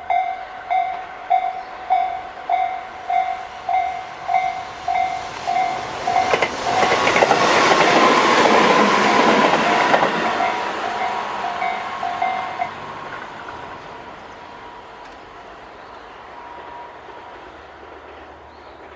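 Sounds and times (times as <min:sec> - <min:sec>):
train wheels clattering: 0:02.5 - 0:14.3.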